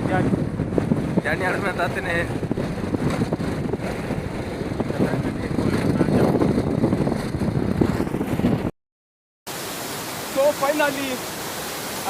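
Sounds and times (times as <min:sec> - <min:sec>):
wind buffeting microphone: 0:00.0 - 0:08.7.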